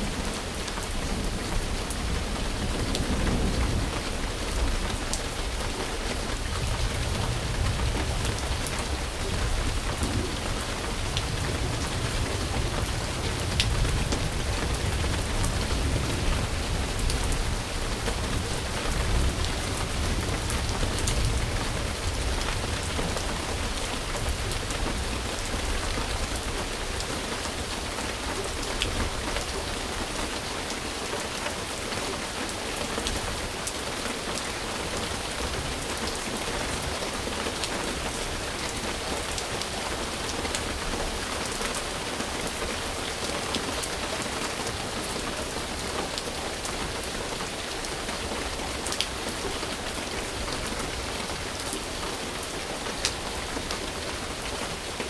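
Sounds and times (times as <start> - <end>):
rain hiss with drops: 0.0 - 55.0.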